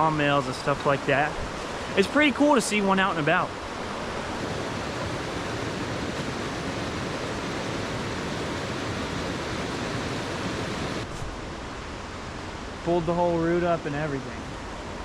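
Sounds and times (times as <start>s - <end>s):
rocky creek rushing: 0.0s - 11.1s.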